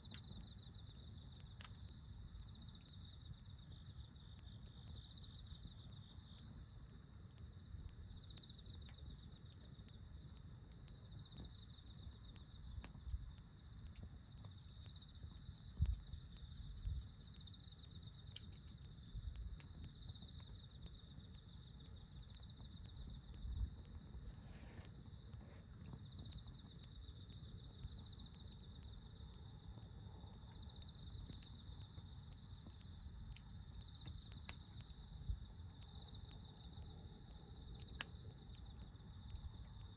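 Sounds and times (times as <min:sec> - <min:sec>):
campfire crackling and popping: 0:00.0 - 0:39.9
insects chirring: 0:08.2 - 0:39.9.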